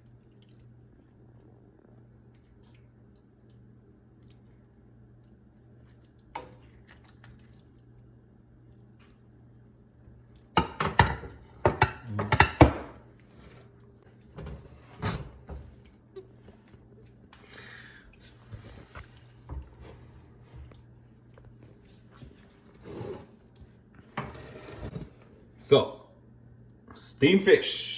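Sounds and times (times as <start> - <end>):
wet liquid sounds: 0.0 - 10.6
utensils knocking against pot: 10.6 - 13.0.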